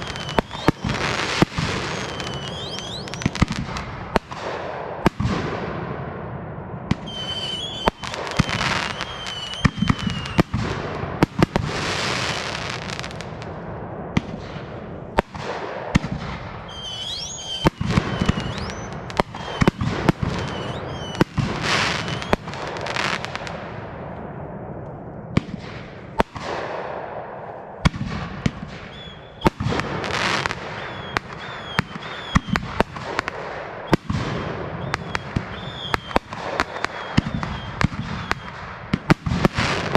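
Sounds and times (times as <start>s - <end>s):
wavering high whistles: 0.0s - 1.2s, 1.8s - 3.4s, 7.1s - 10.4s, 16.7s - 21.2s, 30.7s - 32.6s
fireworks crackling: 0.0s - 5.5s, 6.9s - 39.9s
fireworks bursts and bangs: 0.0s - 24.1s, 25.3s - 39.9s.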